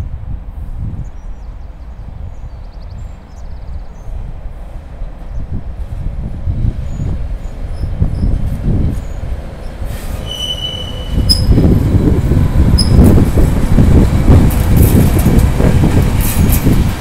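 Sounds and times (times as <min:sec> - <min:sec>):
freight train wheels rumbling: 0:00.0 - 0:17.0
high wheel squeals: 0:09.9 - 0:11.8, 0:12.7 - 0:13.2.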